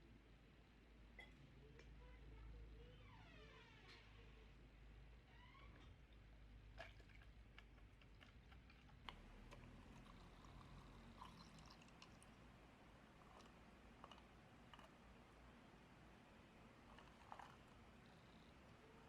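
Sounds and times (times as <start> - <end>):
faint small clicks and taps: 1.2 - 2.0.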